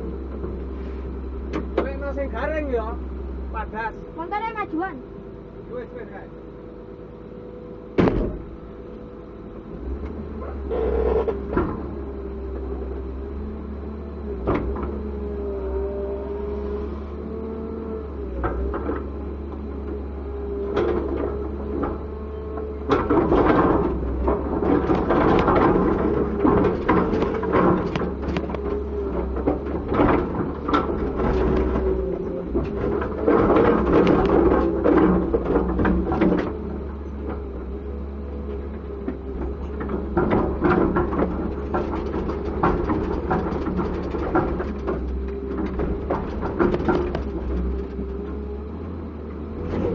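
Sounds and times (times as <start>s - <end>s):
excavator diesel engine hum: 0.0s - 49.9s
hydraulic whine: 5.9s - 49.9s
knocks and clatter: 8.0s - 8.7s, 20.7s - 37.7s, 38.6s - 48.7s.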